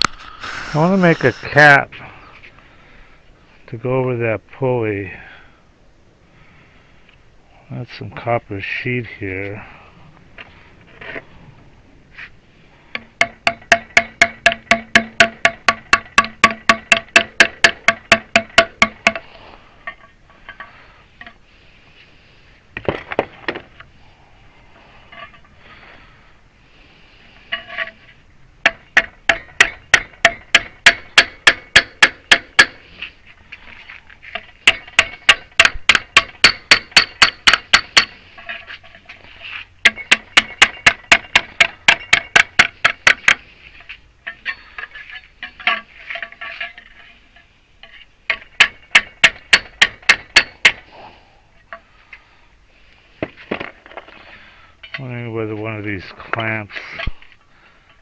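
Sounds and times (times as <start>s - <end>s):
hammer striking copper sheet: 13.0s - 19.2s, 28.6s - 32.8s, 34.6s - 38.2s, 39.8s - 43.4s, 48.3s - 50.9s.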